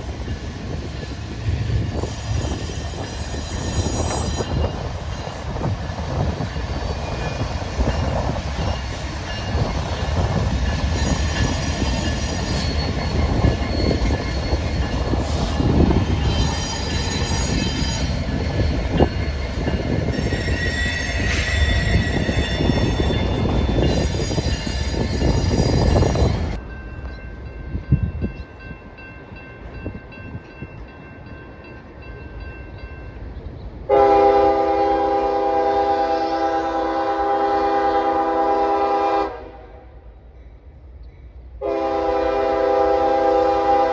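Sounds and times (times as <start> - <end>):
train wheels rumbling on rail: 0.0 - 39.6
high wheel squeal: 1.7 - 5.4, 9.5 - 26.6
loud train horn: 33.9 - 40.1, 41.6 - 43.9.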